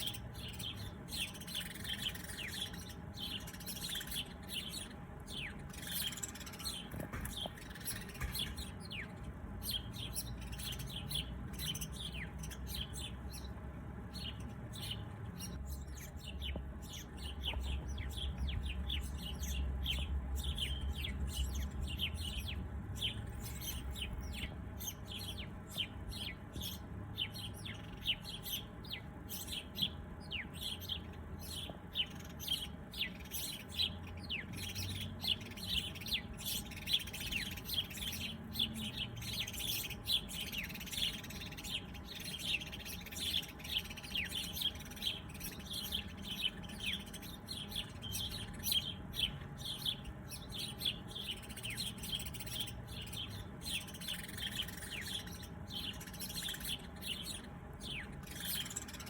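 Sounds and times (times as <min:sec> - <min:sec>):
small birds chirping: 0:00.0 - 0:59.0.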